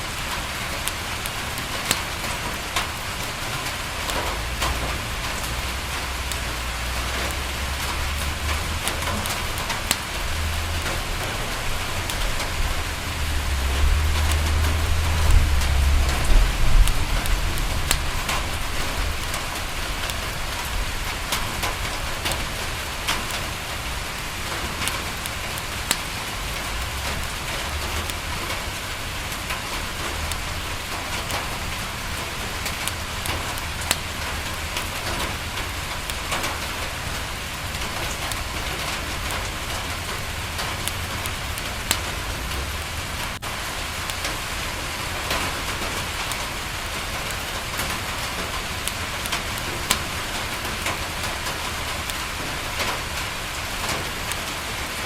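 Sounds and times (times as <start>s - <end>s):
fireplace crackling: 0.0s - 54.9s
rain pattering on a window: 0.0s - 55.0s
low rumble: 10.1s - 20.9s.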